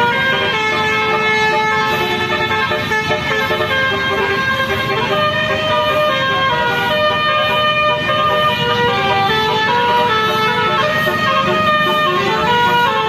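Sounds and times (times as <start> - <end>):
horn playing a tune: 0.0 - 13.0.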